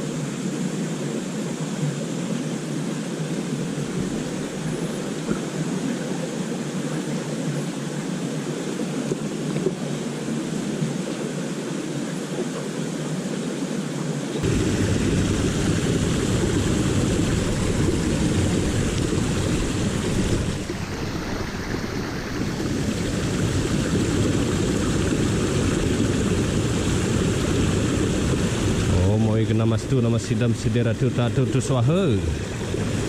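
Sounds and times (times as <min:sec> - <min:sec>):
river water rushing: 0:00.0 - 0:33.0
wind buffeting microphone: 0:14.4 - 0:33.0.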